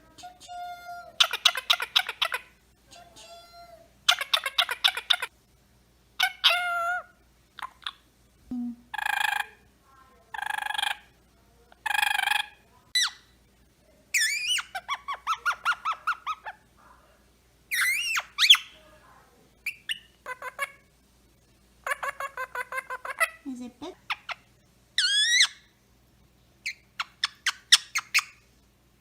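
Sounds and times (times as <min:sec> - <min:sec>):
parrot squawking and chattering: 0:00.2 - 0:05.4, 0:06.2 - 0:08.1, 0:08.9 - 0:09.7, 0:10.3 - 0:11.2, 0:11.8 - 0:13.4, 0:14.1 - 0:17.1, 0:17.7 - 0:18.9, 0:19.6 - 0:20.9, 0:21.8 - 0:25.7, 0:26.6 - 0:28.5.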